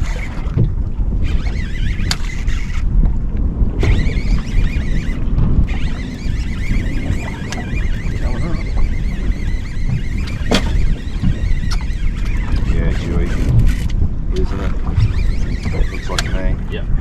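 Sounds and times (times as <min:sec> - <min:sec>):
steady low rumble: 0:00.0 - 0:17.0
wind buffeting microphone: 0:00.0 - 0:17.0
high warbling squeal: 0:03.8 - 0:13.4, 0:14.8 - 0:16.5
sharp click: 0:15.1 - 0:16.4.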